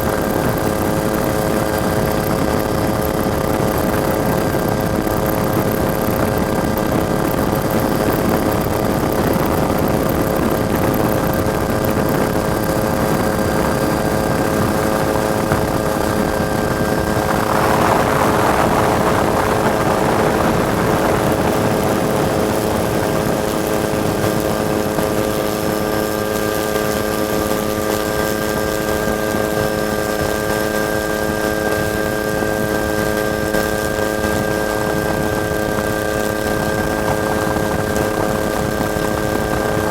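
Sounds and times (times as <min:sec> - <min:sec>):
helicopter engine and rotor: 0:00.0 - 0:39.9
rush of noise: 0:10.8 - 0:39.9.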